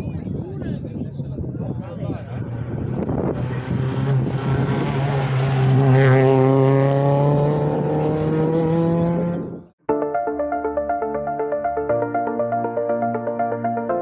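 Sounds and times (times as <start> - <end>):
rally car engine passing: 2.2 - 9.7.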